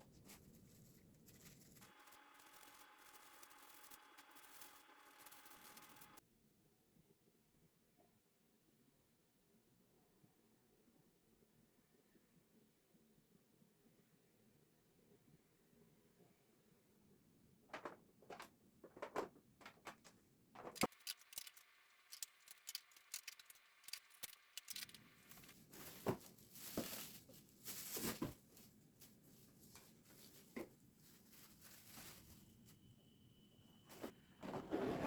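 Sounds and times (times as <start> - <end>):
plastic packaging crinkling: 0.1 - 6.2, 20.6 - 32.6.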